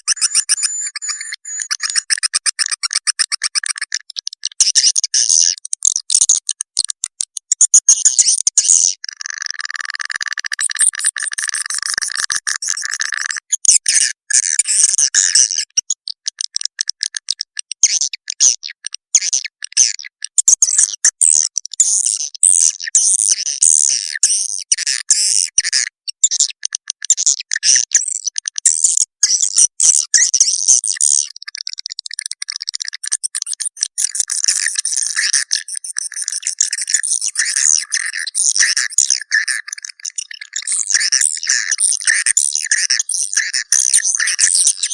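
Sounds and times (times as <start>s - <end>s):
swiftlet chirping and twittering: 0.0s - 3.7s, 33.0s - 44.9s.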